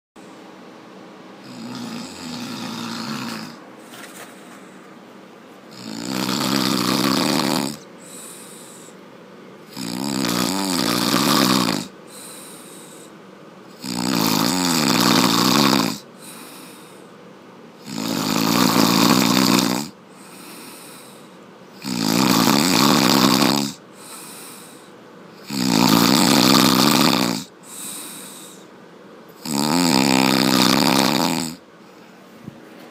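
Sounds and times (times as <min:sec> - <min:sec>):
loud snoring: 0:01.4 - 0:03.6, 0:05.7 - 0:09.0, 0:09.7 - 0:13.1, 0:13.7 - 0:17.0, 0:17.8 - 0:28.6, 0:29.4 - 0:31.7
soft breathing: 0:03.8 - 0:05.0, 0:07.9 - 0:09.1, 0:12.0 - 0:13.4, 0:16.1 - 0:17.3, 0:20.0 - 0:21.5, 0:23.8 - 0:25.1, 0:27.5 - 0:28.8.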